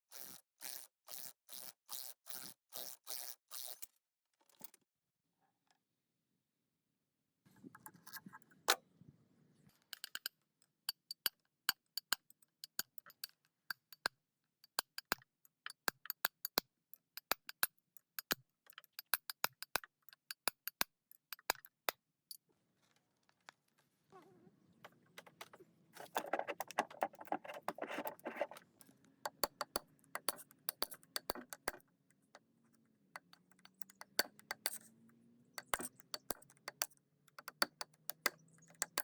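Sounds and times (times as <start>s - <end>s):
metal clicks and taps: 29.3s - 32.4s, 33.2s - 34.9s, 35.6s - 39.0s.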